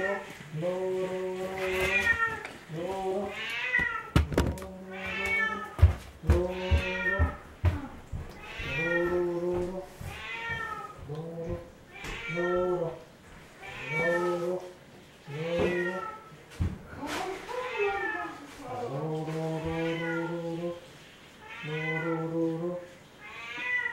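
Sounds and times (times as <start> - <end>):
cat meowing: 4.9 - 9.3, 10.1 - 11.0, 11.9 - 12.9, 19.6 - 20.4, 21.4 - 22.3, 23.2 - 23.9.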